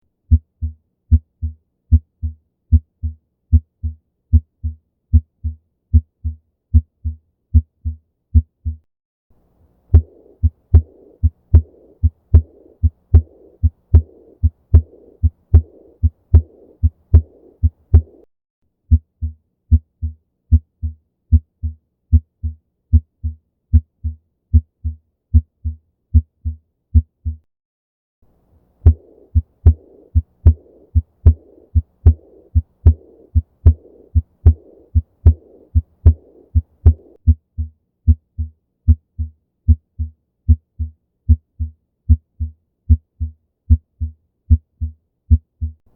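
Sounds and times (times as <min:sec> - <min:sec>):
heartbeats: 0:00.3 - 0:08.8, 0:09.9 - 0:18.2, 0:18.9 - 0:27.4, 0:28.8 - 0:45.8
soft heart murmur: 0:09.9 - 0:18.3, 0:28.8 - 0:45.8.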